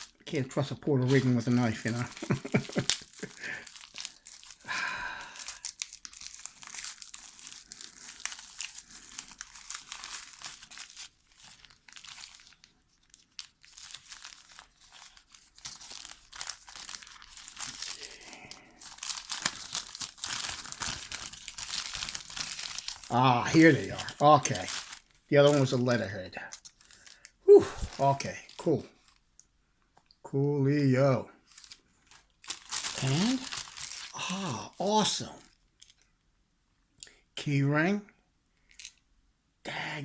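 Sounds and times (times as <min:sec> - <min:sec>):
packaging crinkling and tearing: 0:00.0 - 0:29.4, 0:31.4 - 0:36.1.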